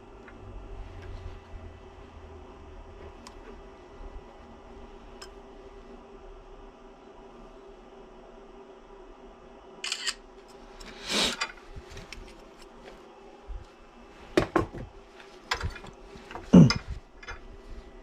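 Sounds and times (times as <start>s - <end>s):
steady low hum: 0.0s - 18.0s
short hiss: 10.9s - 11.5s.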